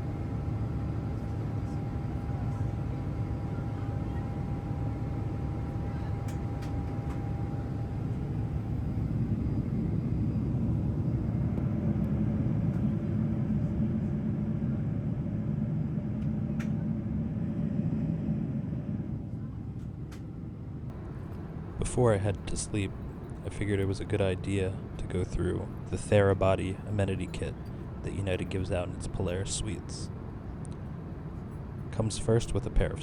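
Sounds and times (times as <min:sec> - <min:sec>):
jet engines rumbling in cabin: 0:00.0 - 0:33.0
thin steady whine: 0:20.9 - 0:33.0.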